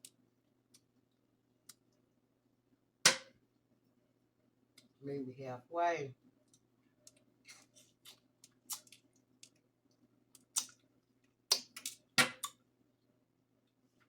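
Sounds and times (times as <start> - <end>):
wet mouth chewing smacks: 7.6 - 9.6, 10.4 - 10.9.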